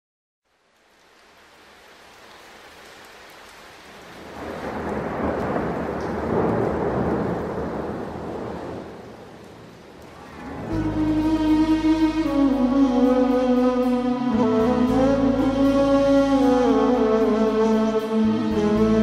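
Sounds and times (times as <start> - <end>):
rain falling: 0.4 - 19.0
thunder rumbling: 4.2 - 19.0.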